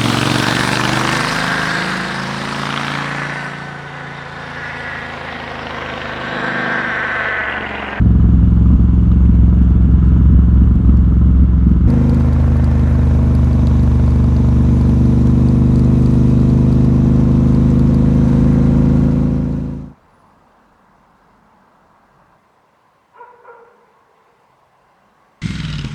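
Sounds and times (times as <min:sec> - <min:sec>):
motorcycle engine running: 0:00.0 - 0:20.0, 0:25.4 - 0:25.9.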